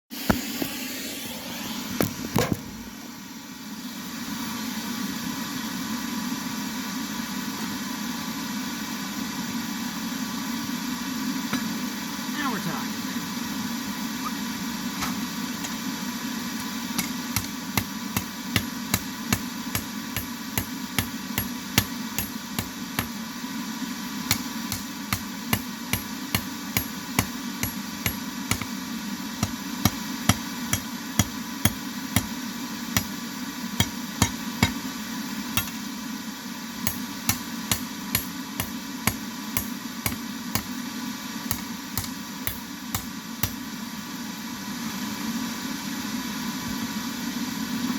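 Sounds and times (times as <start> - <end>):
steady low hum: 2.6 - 44.9
hammer striking metal on anvil: 17.0 - 23.2, 24.3 - 28.8, 29.4 - 32.4, 33.0 - 33.2, 33.8 - 34.9, 35.6 - 35.9, 36.8 - 40.8, 41.5 - 43.6.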